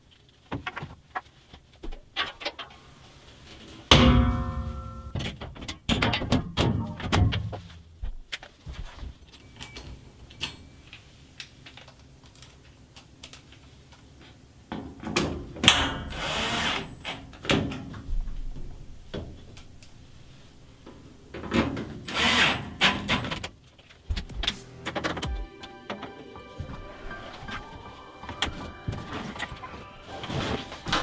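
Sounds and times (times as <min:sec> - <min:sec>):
panels clicking and knocking: 0:03.9 - 0:07.9, 0:14.6 - 0:31.0
power drill running: 0:16.1 - 0:17.2, 0:22.1 - 0:23.2.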